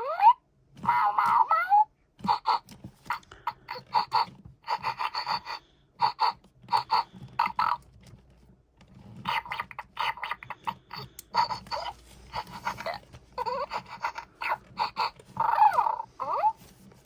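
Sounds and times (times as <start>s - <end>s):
toy bear sniffing and snorting: 2.2s - 7.9s, 9.1s - 17.0s.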